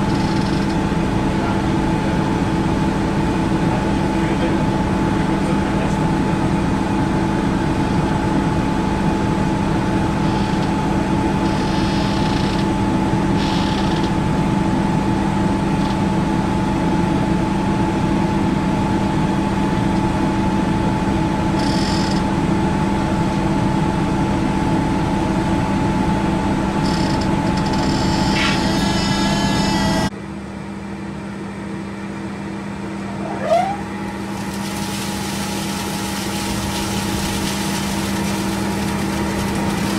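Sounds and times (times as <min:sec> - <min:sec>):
industrial machinery droning hum: 0:00.0 - 0:39.9
brief high squeak: 0:11.4 - 0:12.6, 0:13.4 - 0:14.0, 0:27.7 - 0:30.1, 0:33.0 - 0:34.0.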